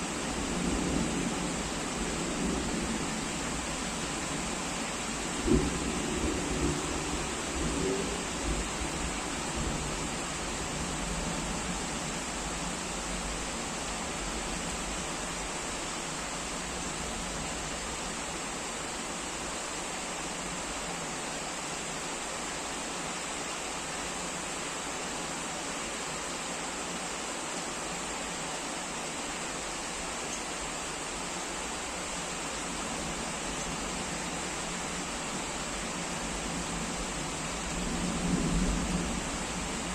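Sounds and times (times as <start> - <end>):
heavy rain falling: 0.0 - 39.9
low thunder rumble: 37.7 - 39.9.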